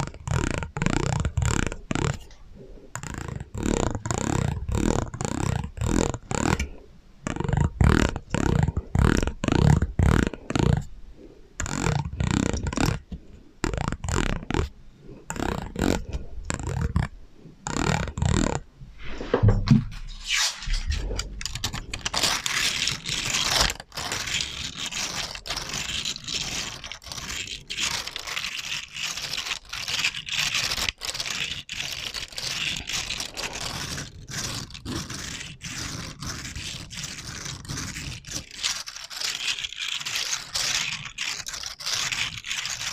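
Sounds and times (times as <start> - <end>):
scratching and scraping: 0.0 - 42.9
low muffled thumps: 19.3 - 20.0.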